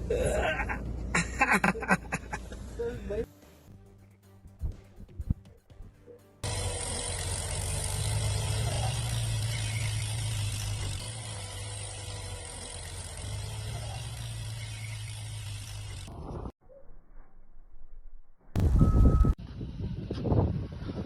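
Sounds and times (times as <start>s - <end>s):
vehicle engine running: 6.4s - 16.2s.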